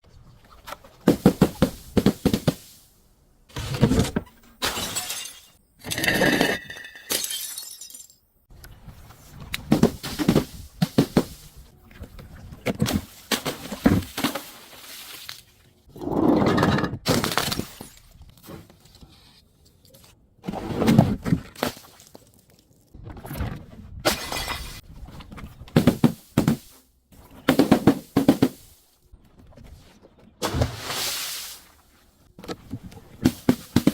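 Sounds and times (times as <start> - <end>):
glass bottles crushing and shattering: 4.6 - 8.2, 24.1 - 24.8.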